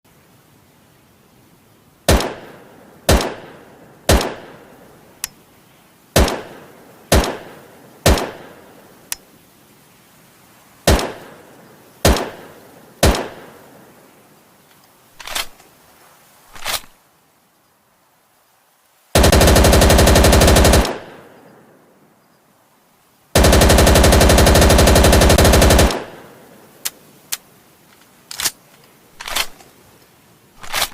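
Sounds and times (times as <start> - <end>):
submachine gun firing: 2.1 - 4.6, 6.2 - 8.6, 10.9 - 11.4, 12.0 - 13.5, 19.2 - 21.3, 23.4 - 26.3.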